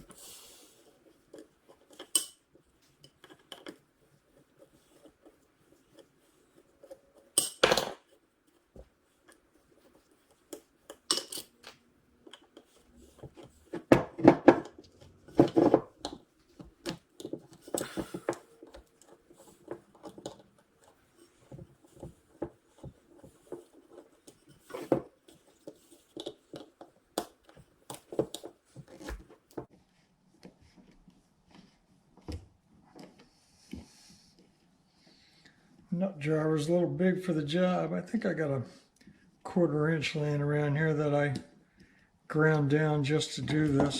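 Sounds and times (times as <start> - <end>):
metal tools clinking: 10.9 - 11.7.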